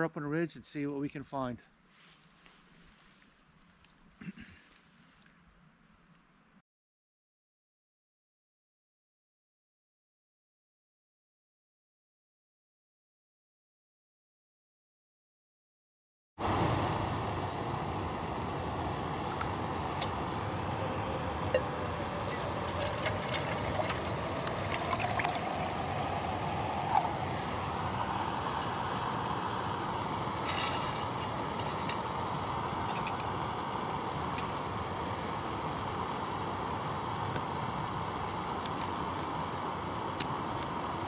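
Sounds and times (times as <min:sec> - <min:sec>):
camping stove hissing: 0:16.4 - 0:41.0.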